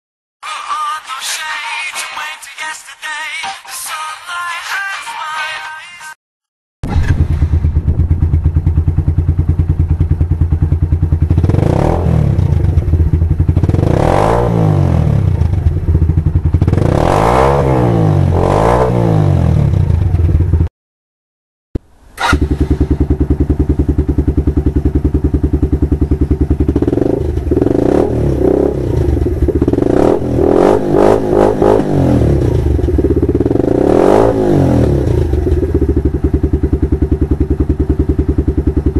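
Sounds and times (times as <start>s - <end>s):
motorcycle engine idling and revving: 6.9s - 20.7s, 22.2s - 38.9s.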